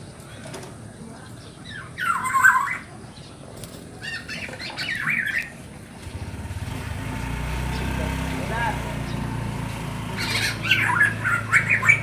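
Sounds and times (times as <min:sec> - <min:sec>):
bird chick squawking: 0:01.6 - 0:02.9, 0:04.0 - 0:05.6, 0:10.1 - 0:12.0.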